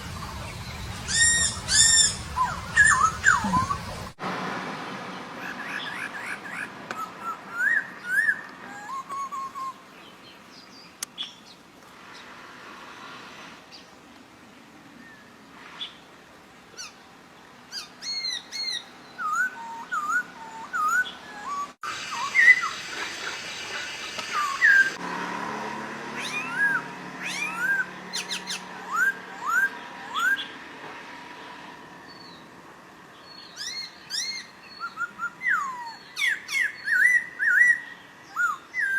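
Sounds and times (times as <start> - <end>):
songbird whistling: 1.0 - 4.0, 5.6 - 9.8, 17.7 - 25.0, 26.2 - 30.5, 33.4 - 38.9.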